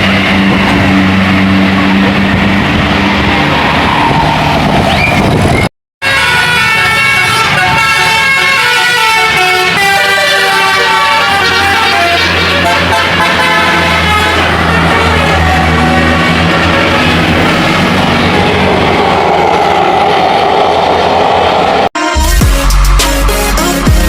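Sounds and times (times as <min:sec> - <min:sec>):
bus passing: 0:00.0 - 0:21.9
multi-trumpet bus horn melody: 0:06.0 - 0:16.4, 0:22.0 - 0:24.0.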